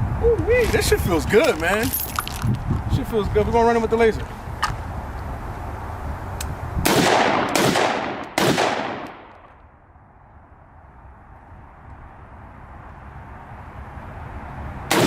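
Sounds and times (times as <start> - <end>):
pistol shots with echo: 6.8 - 9.5.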